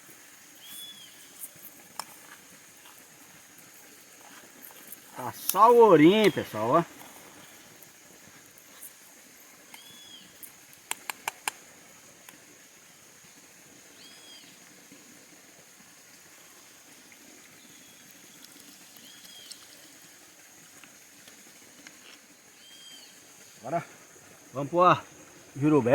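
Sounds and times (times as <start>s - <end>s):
high-pitched insect drone: 0.5s - 10.7s
bird whistling: 0.6s - 1.3s, 9.8s - 10.2s.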